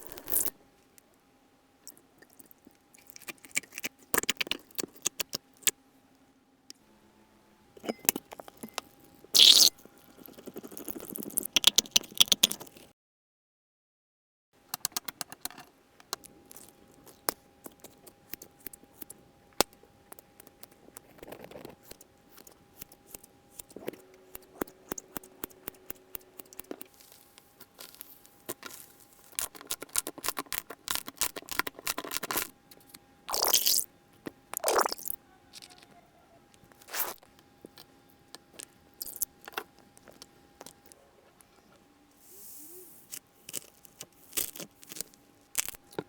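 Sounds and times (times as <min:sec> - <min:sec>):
slime squelching: 0:08.1 - 0:12.9, 0:34.6 - 0:35.8.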